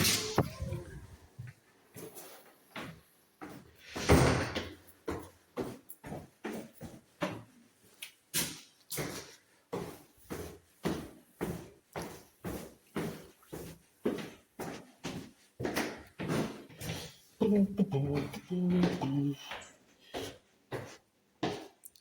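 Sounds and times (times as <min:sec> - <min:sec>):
steady footsteps: 0:09.0 - 0:21.8.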